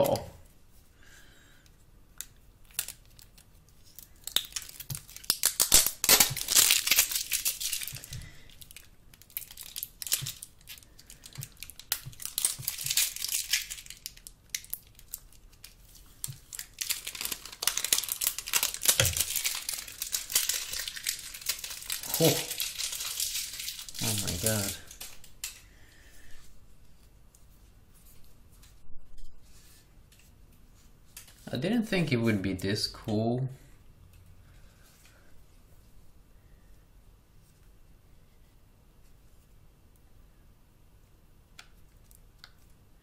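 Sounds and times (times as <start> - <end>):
plastic wrapping crinkling: 2.6 - 25.6.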